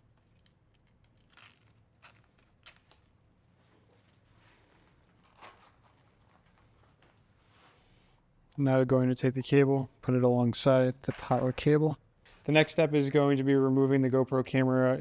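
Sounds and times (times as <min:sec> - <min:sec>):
velcro tie pulled open: 0:00.2 - 0:03.1.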